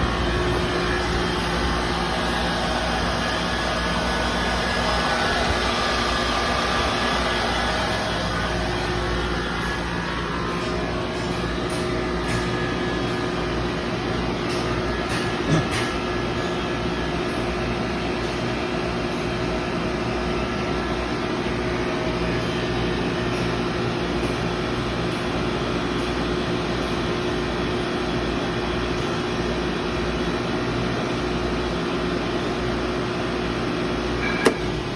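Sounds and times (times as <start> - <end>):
water chiller humming: 0.0 - 18.2, 31.5 - 34.9.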